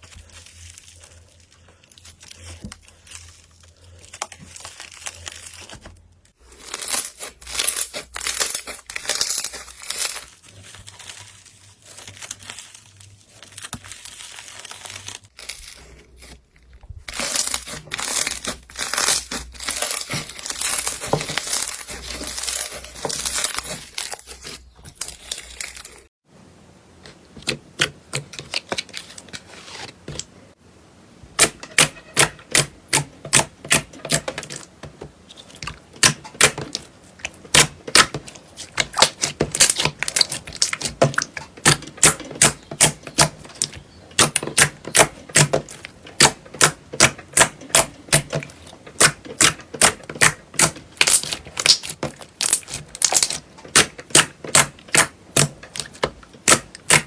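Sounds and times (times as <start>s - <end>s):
slime crackling: 17.0s - 26.1s, 35.3s - 57.0s.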